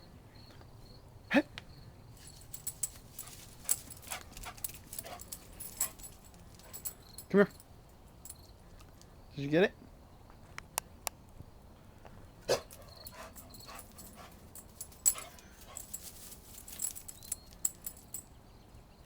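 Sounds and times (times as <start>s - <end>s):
dog claws clicking and tapping: 2.2s - 7.6s, 12.7s - 18.2s.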